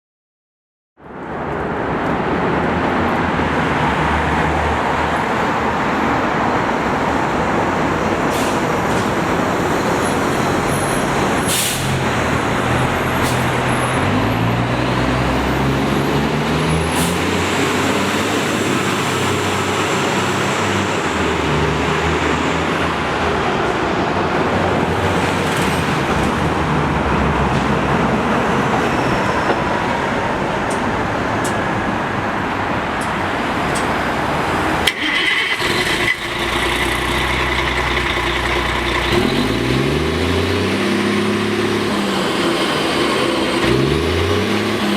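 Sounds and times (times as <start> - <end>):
diesel bus engine running: 2.1 - 44.9
short air hisses: 11.5 - 12.0.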